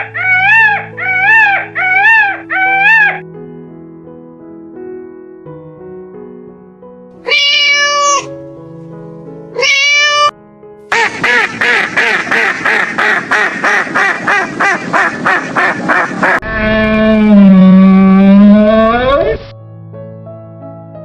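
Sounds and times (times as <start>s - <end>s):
soft background music: 0.0s - 13.2s
cat meowing: 7.2s - 8.3s, 9.5s - 10.3s.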